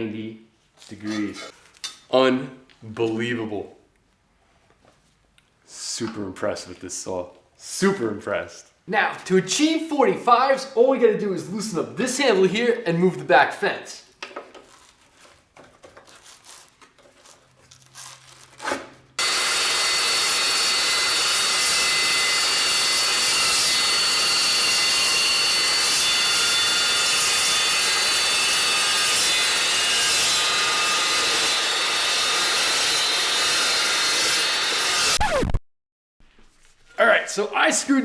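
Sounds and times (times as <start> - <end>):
faint handling sounds: 4.0 - 5.6, 14.4 - 18.6
chop saw cutting steel: 18.6 - 35.5.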